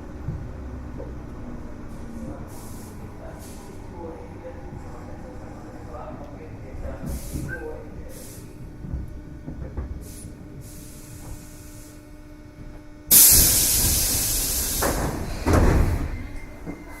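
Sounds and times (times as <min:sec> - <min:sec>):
compressed air hissing: 0:07.0 - 0:08.5, 0:10.0 - 0:12.0, 0:13.1 - 0:15.6.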